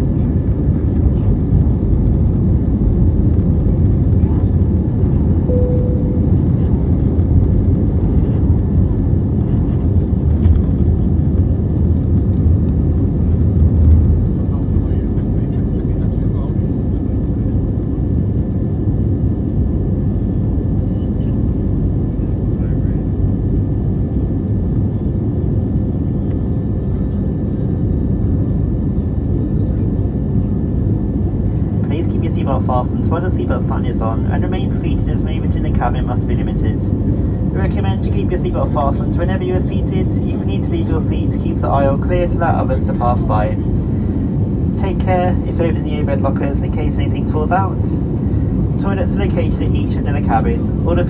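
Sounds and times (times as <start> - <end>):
aircraft cabin engine roar: 0.0 - 51.0
short steady tone: 5.5 - 6.9.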